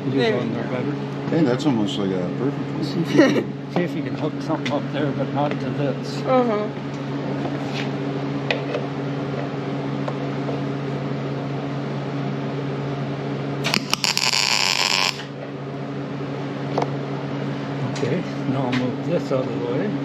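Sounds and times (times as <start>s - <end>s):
steady machine hum: 0.0s - 20.0s
welding arc crackling: 13.6s - 15.3s.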